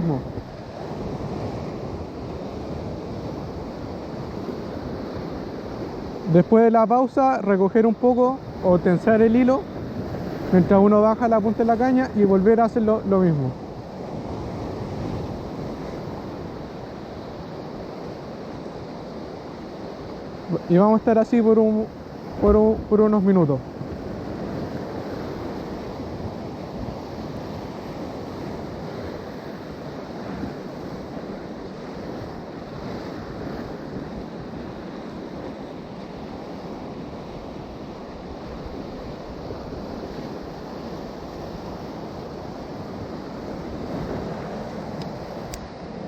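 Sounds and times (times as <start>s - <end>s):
surf washing against rocks: 0.0s - 46.0s
wind buffeting microphone: 7.9s - 21.1s.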